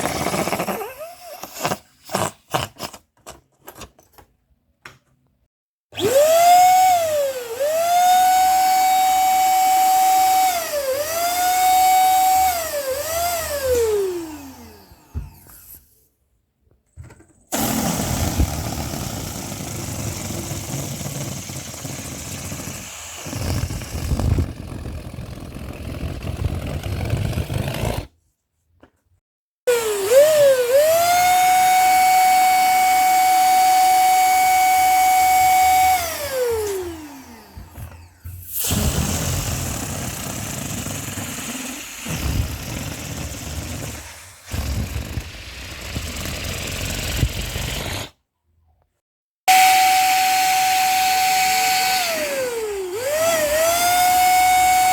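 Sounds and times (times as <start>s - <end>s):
balloon squealing: 42.0s - 48.2s.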